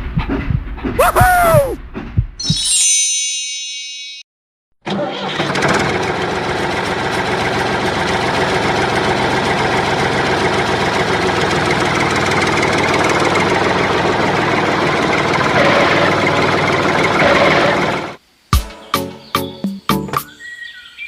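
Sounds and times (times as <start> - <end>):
engine idling: 5.1 - 18.2.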